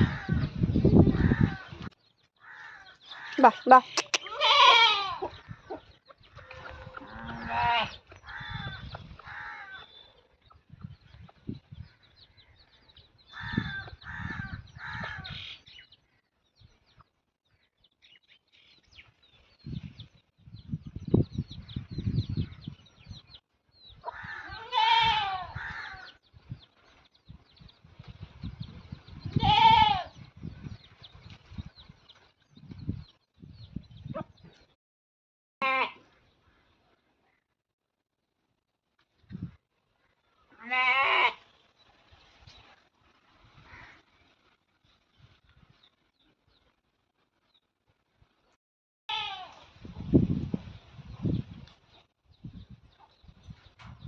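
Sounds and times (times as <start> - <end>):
goats bleating: 4.2 - 5.3, 6.5 - 8.0, 24.6 - 25.5, 40.6 - 41.4.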